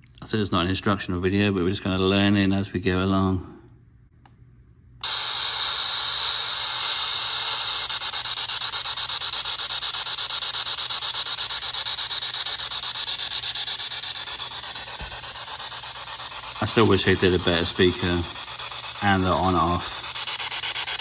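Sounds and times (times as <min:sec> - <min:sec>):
stuttering radio static: 0:05.0 - 0:21.0.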